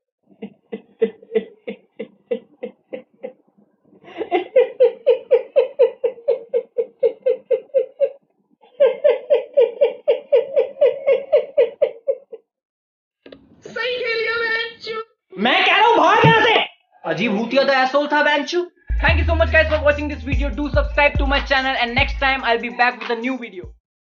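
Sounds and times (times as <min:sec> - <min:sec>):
person laughing: 0:00.3 - 0:03.4, 0:04.0 - 0:12.4.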